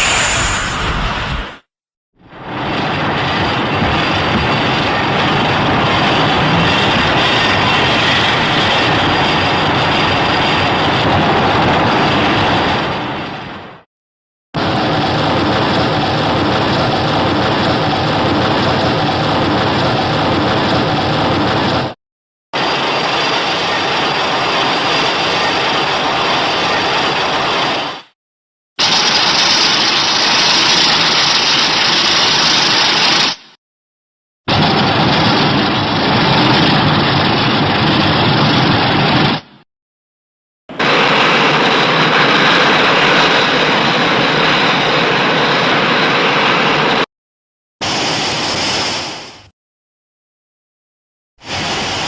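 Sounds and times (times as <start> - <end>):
monster roar sound effect: 0.0 - 1.6
monster roar: 6.1 - 7.4.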